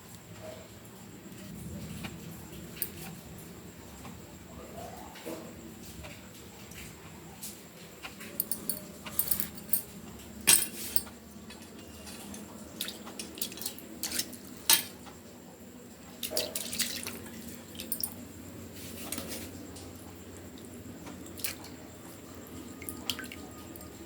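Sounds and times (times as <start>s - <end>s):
utensils clinking: 8.2s - 9.9s, 10.5s - 15.0s, 16.2s - 18.2s
water splashing: 16.2s - 18.0s.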